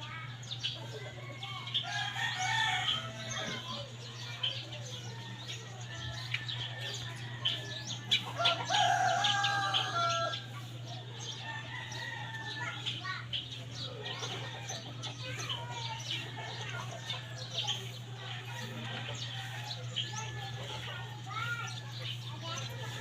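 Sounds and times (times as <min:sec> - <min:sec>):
birds calling: 0:00.0 - 0:23.0.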